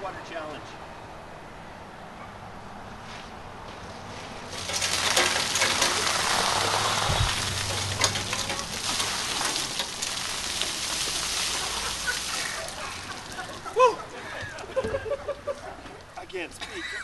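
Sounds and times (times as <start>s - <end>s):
ice water pouring and splashing: 4.5s - 13.9s.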